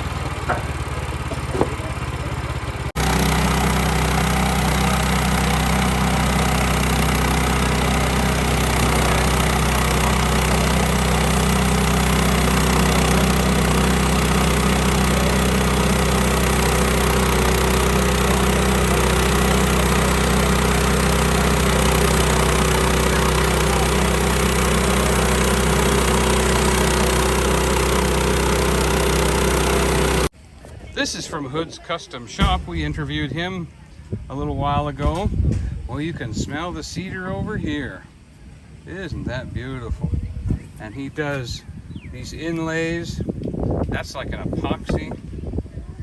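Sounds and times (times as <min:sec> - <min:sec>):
sawmill engine running: 0:00.0 - 0:33.4.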